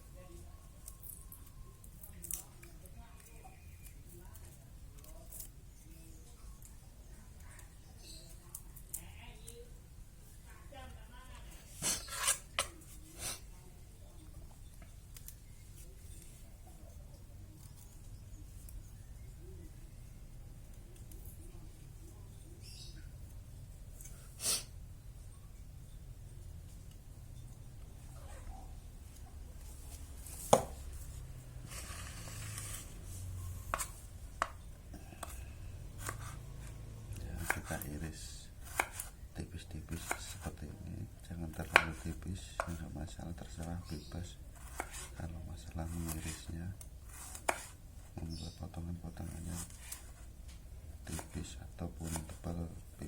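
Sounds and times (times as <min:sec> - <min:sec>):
knife cutting shallots: 0:11.8 - 0:13.4, 0:31.7 - 0:34.6, 0:35.2 - 0:39.2, 0:39.8 - 0:40.6, 0:41.4 - 0:42.8, 0:44.6 - 0:45.2, 0:45.8 - 0:47.8, 0:51.0 - 0:52.5.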